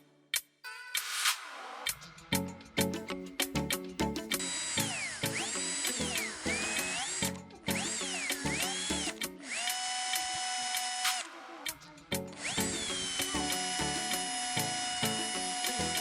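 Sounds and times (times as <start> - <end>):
background music with beat: 0.0 - 9.8, 10.8 - 16.0
electric drill motor whining: 4.4 - 11.4, 12.4 - 16.0.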